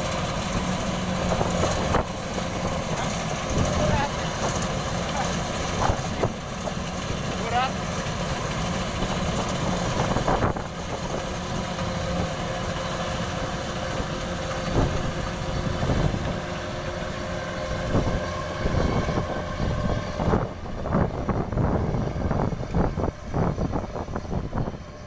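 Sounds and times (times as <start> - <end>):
combine harvester running: 0.0 - 25.0.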